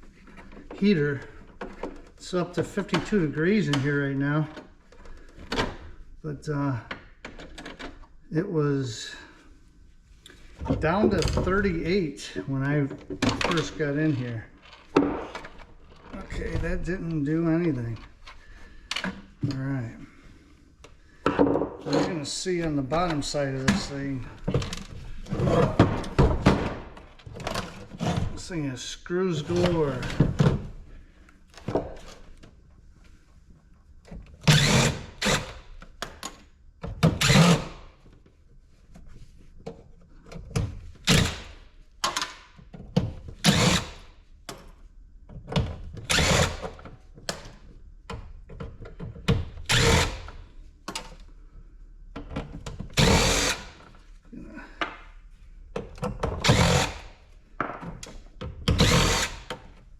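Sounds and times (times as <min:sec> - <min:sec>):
power drill bursts: 0:34.5 - 0:35.7, 0:37.2 - 0:37.8, 0:43.4 - 0:44.1, 0:46.1 - 0:46.6, 0:49.7 - 0:50.3, 0:53.0 - 0:53.8, 0:56.4 - 0:57.1, 0:58.7 - 0:59.5.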